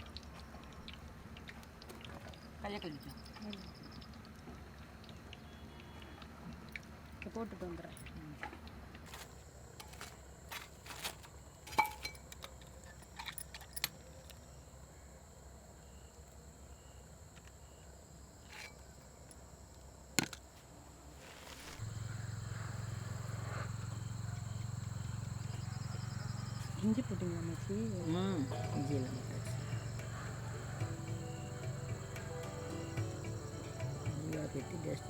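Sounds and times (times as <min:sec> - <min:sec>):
insects chirping: 0:09.1 - 0:35.0
low steady hum: 0:17.6 - 0:35.0.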